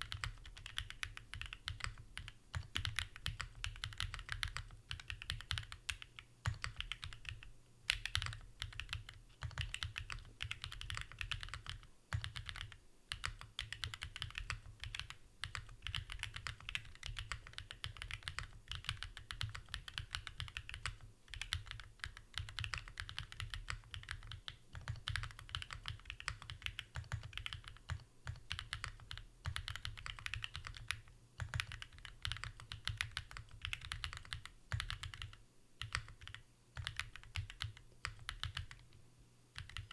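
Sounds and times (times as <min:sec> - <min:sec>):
fast mechanical keyboard typing: 0:00.0 - 0:39.0, 0:39.6 - 0:39.9.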